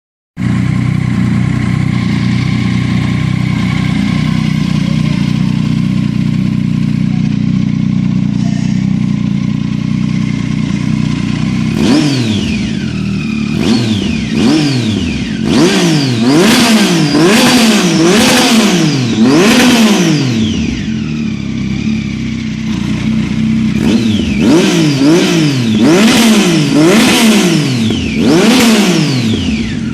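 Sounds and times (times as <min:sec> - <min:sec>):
motorcycle engine revving: 0:00.4 - 0:29.9.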